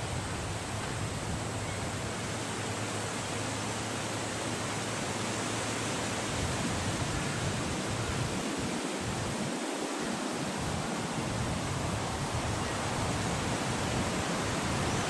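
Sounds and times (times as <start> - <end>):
wind blowing: 0.0 - 15.0.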